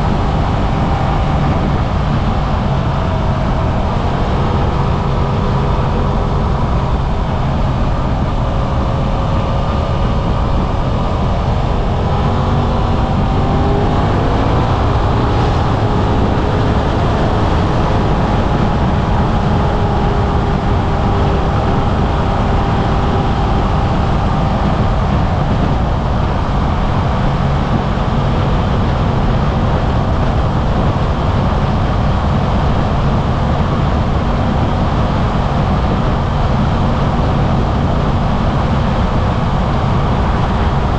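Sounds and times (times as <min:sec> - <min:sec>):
motorcycle engine running: 0:00.0 - 0:40.9
wind rush: 0:00.0 - 0:40.9.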